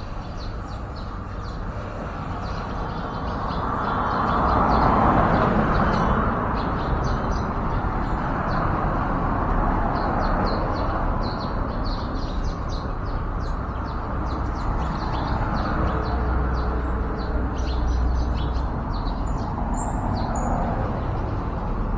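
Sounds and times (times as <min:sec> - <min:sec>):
birds chirping: 0:10.0 - 0:21.9.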